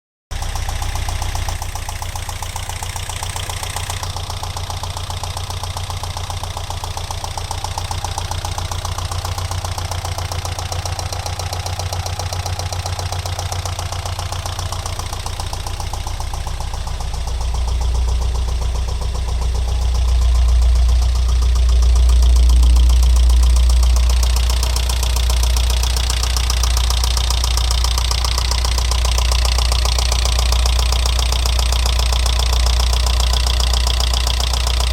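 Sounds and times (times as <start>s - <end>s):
car engine knocking rattle: 0.3s - 34.9s.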